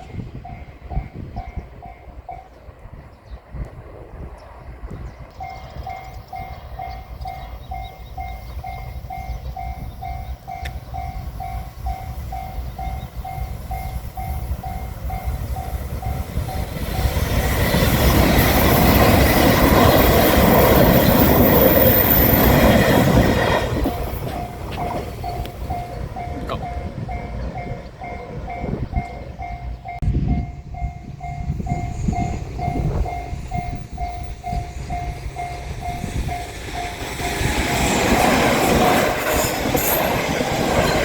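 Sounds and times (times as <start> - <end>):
train rumbling past: 0.0 - 41.0
level crossing bell clanging: 23.4 - 41.0.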